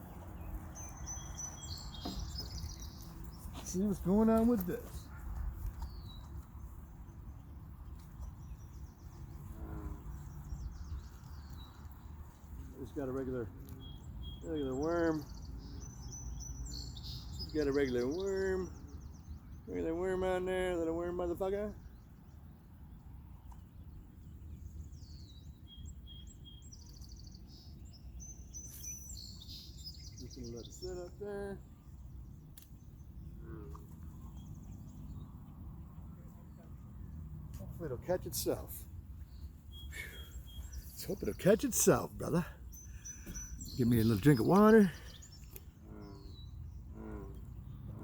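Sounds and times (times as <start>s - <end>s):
falling bird chirp: 0.0s - 3.9s, 39.3s - 48.0s
songbirds chirping and trilling: 0.0s - 48.0s.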